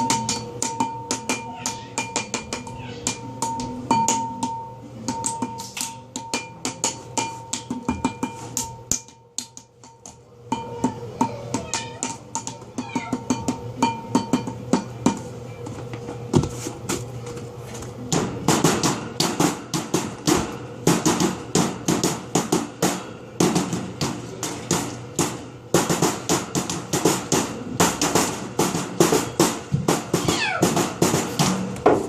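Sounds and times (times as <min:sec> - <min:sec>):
steady low hum: 0:00.0 - 0:32.0
rapid irregular knocking and banging: 0:18.1 - 0:32.0.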